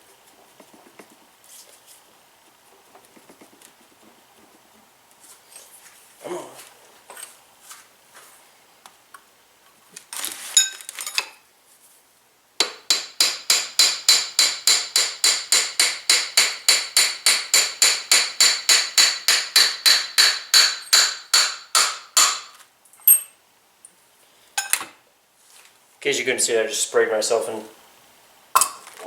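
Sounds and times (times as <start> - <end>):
hammer tapping on metal: 12.6 - 22.5.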